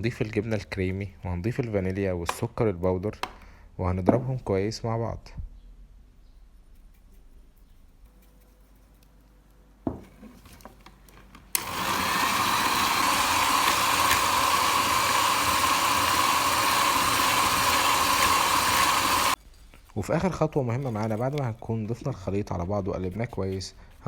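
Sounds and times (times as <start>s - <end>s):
electric mixer running: 11.6s - 19.4s.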